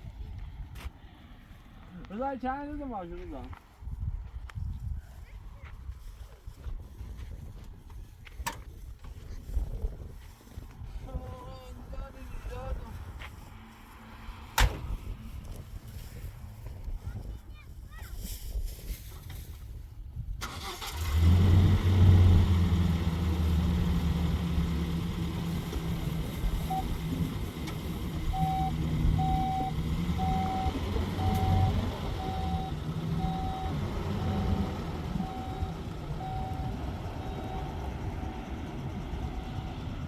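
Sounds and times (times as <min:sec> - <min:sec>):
vehicle engine starting and running: 0:20.4 - 0:40.0
warning beep: 0:28.3 - 0:37.8.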